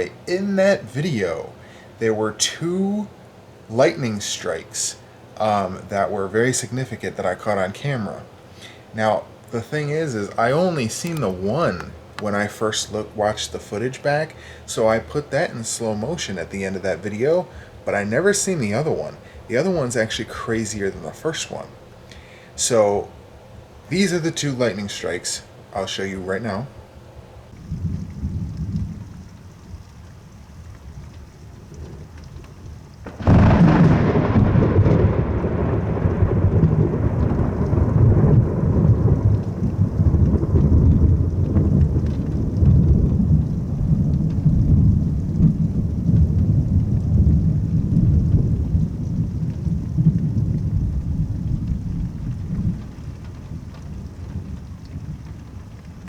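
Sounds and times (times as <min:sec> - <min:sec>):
rain hissing: 0:00.0 - 0:56.0
thunderclap and rumbling thunder: 0:27.5 - 0:56.0.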